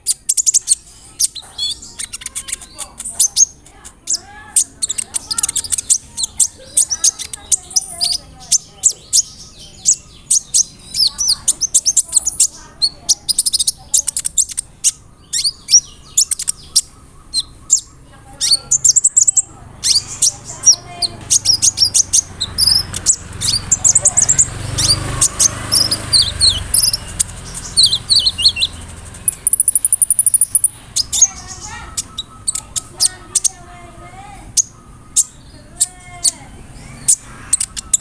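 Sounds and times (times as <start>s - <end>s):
sunbird singing chirps and trills: 0.0s - 38.0s.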